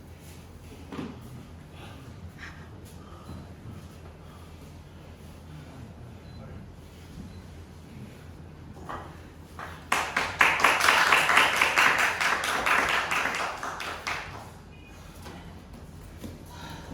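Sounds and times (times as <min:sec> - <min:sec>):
crowd applauding: 0:09.6 - 0:14.6.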